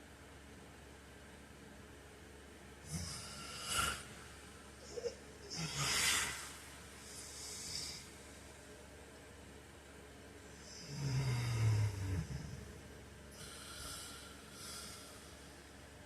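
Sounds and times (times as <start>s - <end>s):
man snoring: 2.8s - 4.2s, 4.9s - 8.2s, 10.6s - 12.7s, 13.4s - 15.5s.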